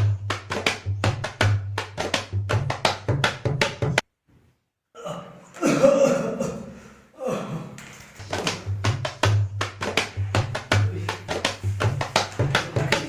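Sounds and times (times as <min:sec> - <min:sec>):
music with quick drum beat: 0:00.0 - 0:04.0, 0:08.2 - 0:13.0
person's drawn-out vocal sound: 0:05.0 - 0:07.8.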